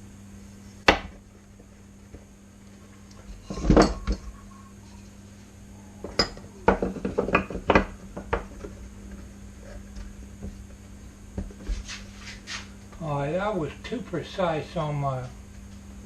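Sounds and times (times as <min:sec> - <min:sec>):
steady low hum: 0:00.0 - 0:16.0
objects knocking on a workbench: 0:06.0 - 0:08.8.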